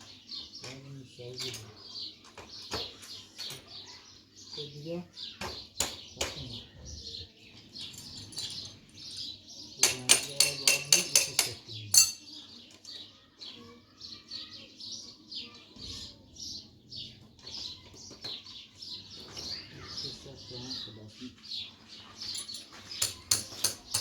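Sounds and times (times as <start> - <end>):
small birds chirping: 0.0 - 24.0
sharp clinks: 7.8 - 12.3.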